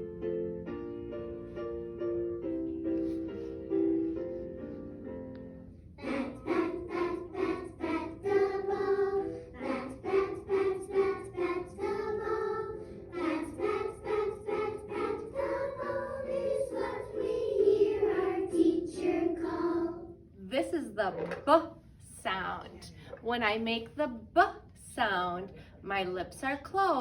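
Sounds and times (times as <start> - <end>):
piano notes: 0.0 - 21.7
group of voices singing: 6.0 - 20.2.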